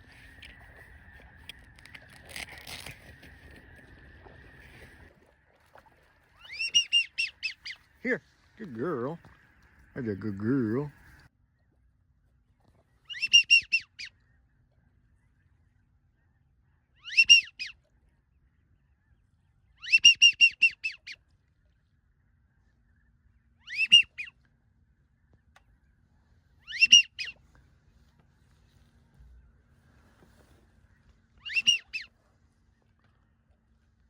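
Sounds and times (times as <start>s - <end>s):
waterfowl yelping calls: 6.4s - 7.9s, 13.1s - 14.1s, 17.0s - 17.8s, 19.8s - 21.2s, 23.6s - 24.3s, 26.6s - 27.4s, 31.4s - 32.2s.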